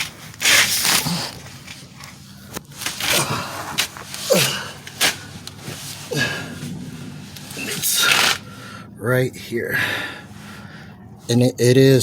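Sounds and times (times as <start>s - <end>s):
man breathing hard and grunting: 6.0s - 9.0s, 9.6s - 11.1s.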